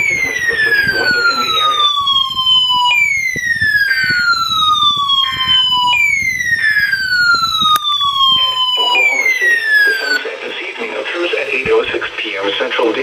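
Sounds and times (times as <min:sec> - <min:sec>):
alert siren falling sweep: 0:00.0 - 0:10.3.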